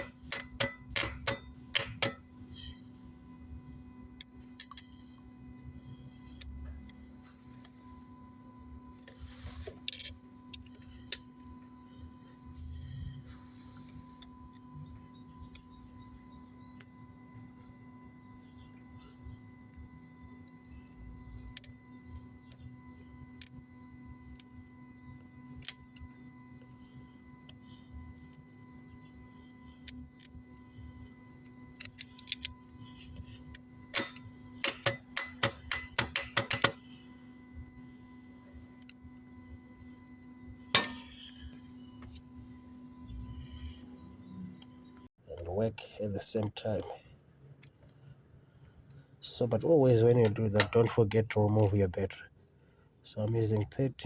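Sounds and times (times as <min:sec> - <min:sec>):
sharp metallic clicks: 0:00.0 - 0:02.2, 0:33.5 - 0:36.8
steady low hum: 0:00.0 - 0:54.0.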